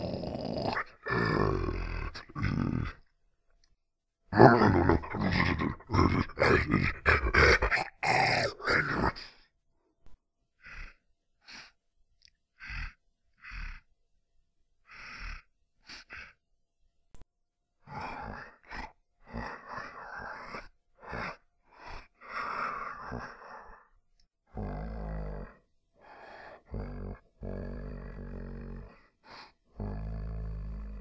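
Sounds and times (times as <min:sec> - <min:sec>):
person making zombie noises: 0:00.0 - 0:03.1, 0:04.3 - 0:09.4, 0:17.9 - 0:23.8.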